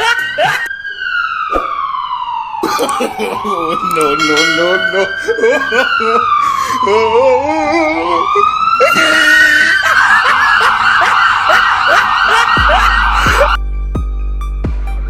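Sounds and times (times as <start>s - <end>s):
electronic police siren: 0.0s - 13.6s.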